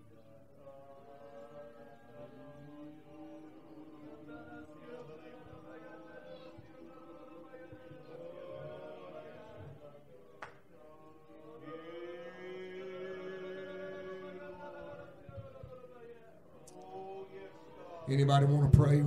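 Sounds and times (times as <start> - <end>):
congregation praying aloud: 0.0 - 19.0
soft sustained music: 0.0 - 19.0.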